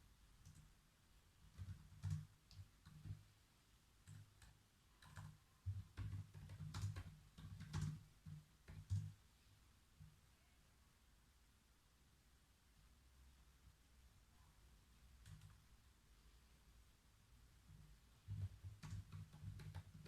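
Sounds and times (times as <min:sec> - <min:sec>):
typing on a keyboard: 0:00.4 - 0:00.7, 0:01.4 - 0:03.2, 0:04.0 - 0:09.2, 0:15.2 - 0:15.6, 0:18.2 - 0:20.0.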